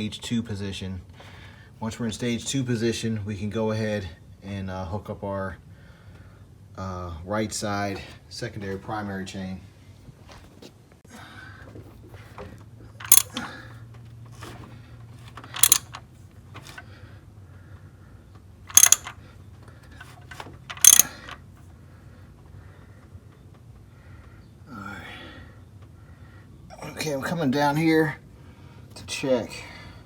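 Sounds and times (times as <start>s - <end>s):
ratchet wrench clicking: 13.0s - 13.4s, 15.6s - 16.0s, 18.7s - 19.1s, 20.7s - 21.3s
light metal clicks: 13.0s - 13.5s, 15.5s - 16.0s, 18.7s - 19.2s, 19.9s - 21.4s.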